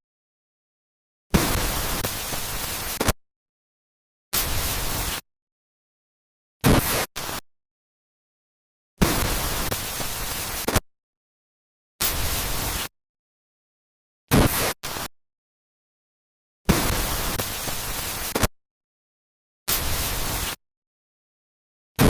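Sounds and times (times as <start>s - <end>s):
static-like hiss bursts: 1.4s - 3.2s, 4.4s - 5.3s, 6.6s - 7.4s, 9.0s - 10.8s, 12.0s - 12.9s, 14.3s - 15.1s, 16.7s - 18.5s, 19.7s - 20.6s.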